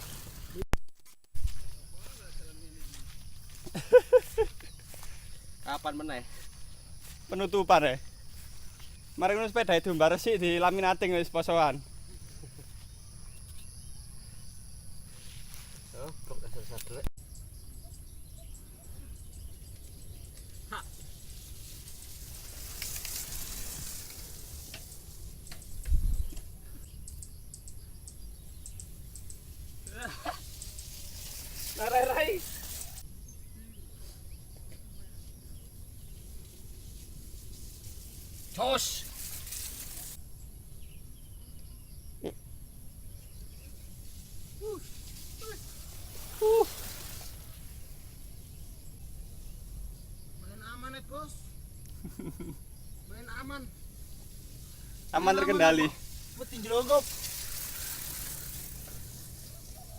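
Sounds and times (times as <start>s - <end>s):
wind and tyres rumbling: 0.0s - 0.6s, 19.1s - 33.0s, 43.0s - 50.4s, 55.9s - 59.9s
high insect drone: 1.4s - 59.9s
faint bird chirp: 4.2s - 10.2s, 12.1s - 22.2s, 25.4s - 37.0s
hiss: 20.7s - 26.8s, 29.2s - 33.1s, 36.2s - 40.2s, 43.6s - 49.7s, 53.7s - 59.9s
wind rumble on microphone: 25.6s - 26.6s.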